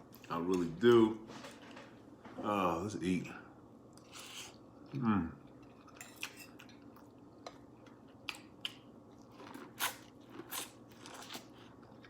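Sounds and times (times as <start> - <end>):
person chewing food: 5.5 - 12.0.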